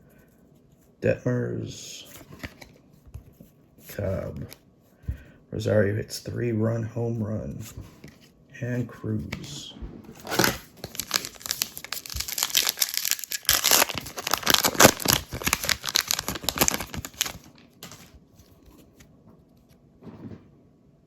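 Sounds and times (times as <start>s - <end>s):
wrapper tearing and crinkling: 10.2s - 18.1s.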